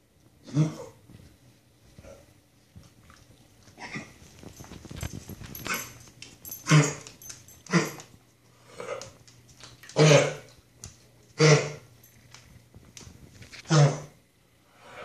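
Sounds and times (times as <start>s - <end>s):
dog coughing: 6.6s - 7.1s, 10.0s - 10.5s, 11.4s - 11.9s.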